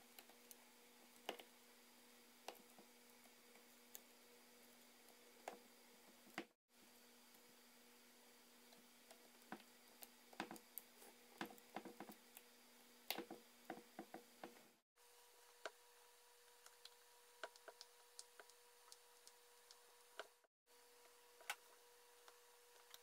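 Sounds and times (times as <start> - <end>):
small clicks and taps: 8.7 - 12.5, 16.6 - 20.4.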